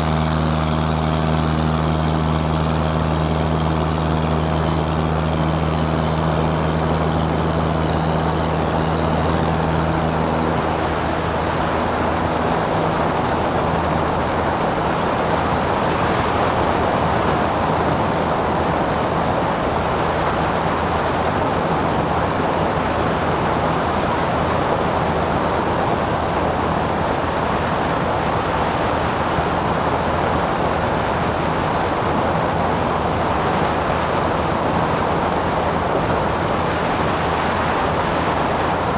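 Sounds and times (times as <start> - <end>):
propeller plane engine running: 0.0 - 38.9.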